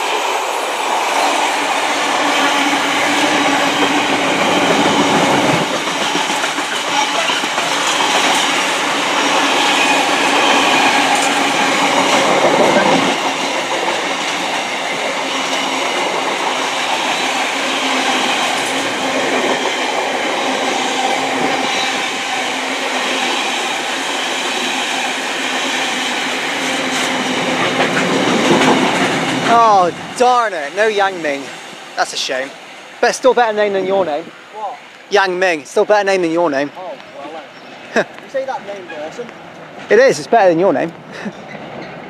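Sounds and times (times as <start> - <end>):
freight train wheels clattering: 0.8 - 32.4.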